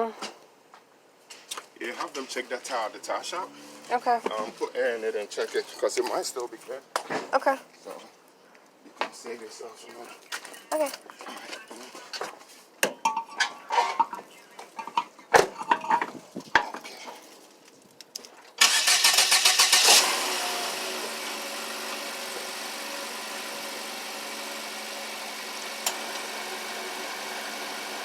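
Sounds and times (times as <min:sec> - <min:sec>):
car engine starting and idling: 0:18.6 - 0:28.0.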